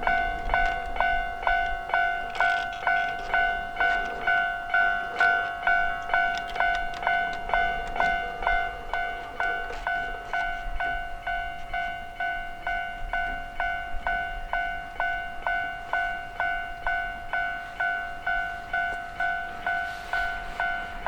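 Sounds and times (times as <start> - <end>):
level crossing bell clanging: 0.0 - 21.0.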